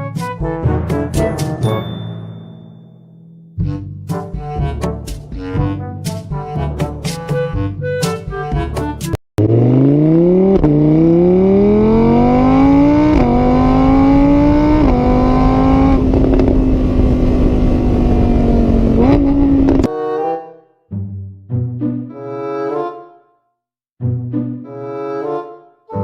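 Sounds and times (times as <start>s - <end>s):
music: 0.0s - 9.2s, 19.9s - 26.0s
car engine accelerating hard: 9.4s - 19.9s.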